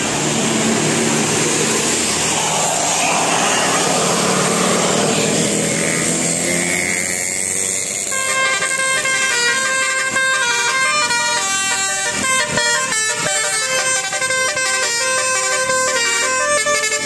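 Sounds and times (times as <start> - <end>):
bus driving past: 0.0 - 8.1.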